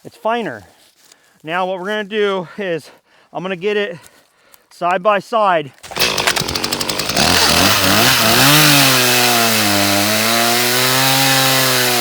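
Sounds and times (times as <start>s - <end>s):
chainsaw revving and cutting log: 5.8s - 12.0s.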